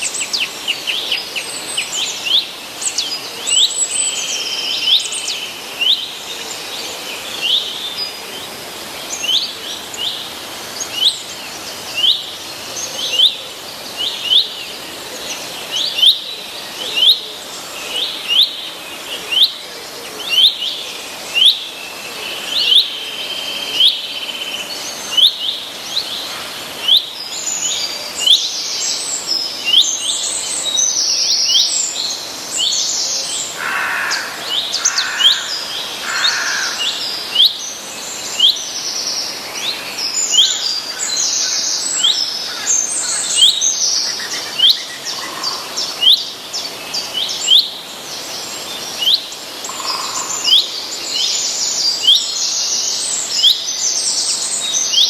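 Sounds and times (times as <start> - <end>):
birds trilling: 33.4 - 37.6, 49.1 - 50.9.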